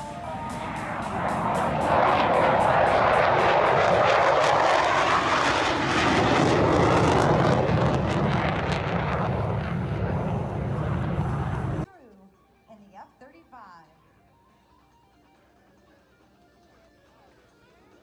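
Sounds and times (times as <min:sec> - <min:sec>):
airplane engine roar: 0:00.0 - 0:11.9.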